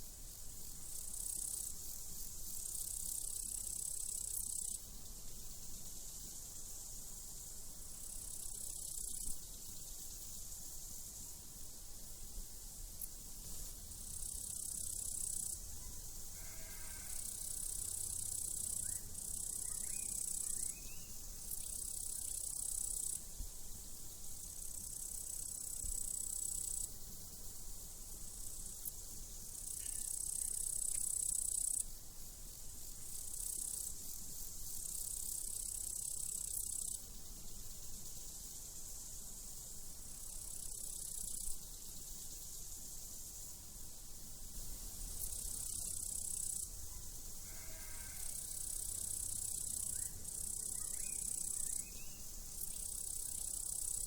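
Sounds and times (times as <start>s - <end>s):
crickets chirping in high trills: 0.0s - 54.0s
faint sheep bleat: 16.3s - 17.3s, 47.4s - 48.4s.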